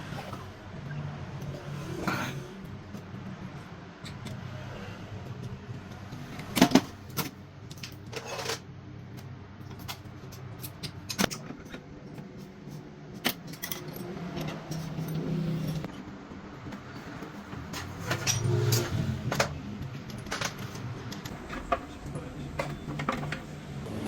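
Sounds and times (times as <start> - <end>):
metal tools clinking: 13.2 - 16.0, 17.7 - 21.9.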